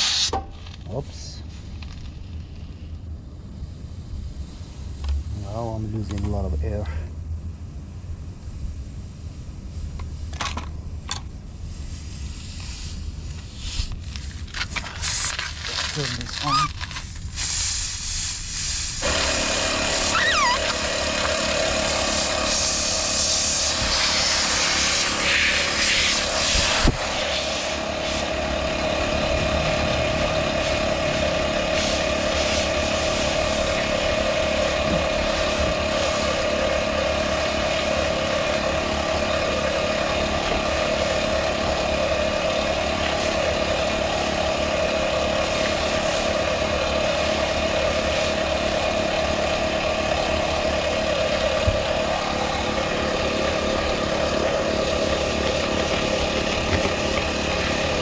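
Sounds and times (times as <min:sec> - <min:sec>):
air hissing: 0:00.0 - 0:00.5, 0:11.5 - 0:28.6, 0:30.5 - 0:34.0
air compressor motor hum: 0:10.8 - 0:58.0.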